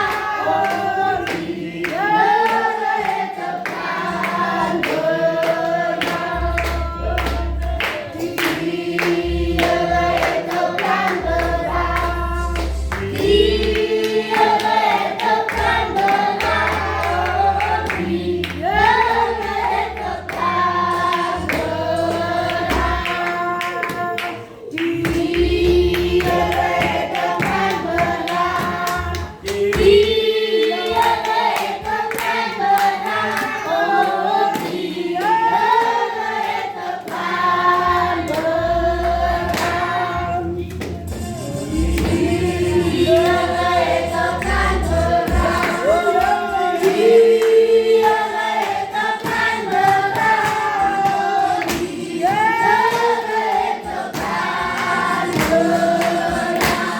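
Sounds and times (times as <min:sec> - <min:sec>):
choir singing gospel song: 0:00.0 - 0:56.9
rhythmic hand clapping: 0:00.0 - 0:56.9
low bass notes: 0:37.9 - 0:46.0.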